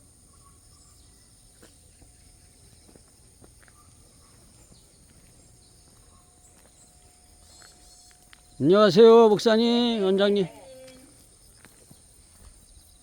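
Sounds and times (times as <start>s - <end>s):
insects chirring: 0.0s - 13.0s.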